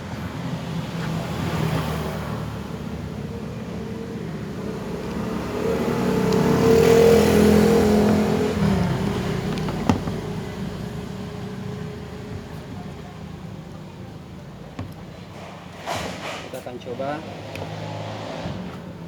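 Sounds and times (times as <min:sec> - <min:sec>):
vehicle engine passing by: 0:00.2 - 0:12.2, 0:17.0 - 0:19.0.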